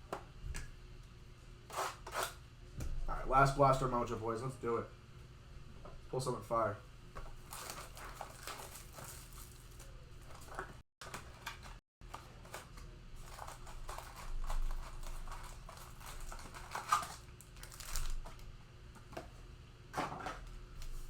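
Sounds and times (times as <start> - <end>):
plastic wrapping crinkling and tearing: 7.4 - 18.4.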